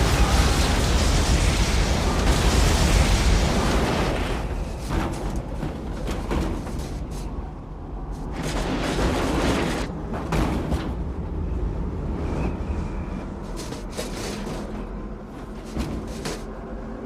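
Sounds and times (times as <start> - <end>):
deep rumble: 0.0 - 5.9
rushing wind: 0.0 - 17.0.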